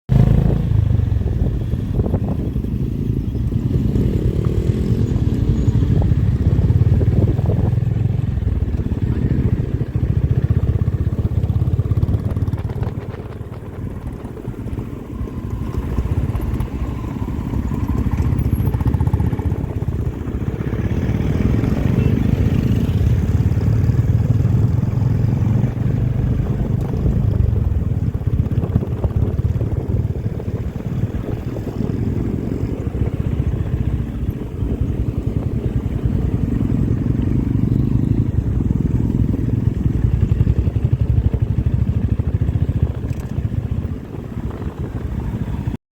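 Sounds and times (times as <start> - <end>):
motorcycle exhaust rumbling: 0.1 - 45.8.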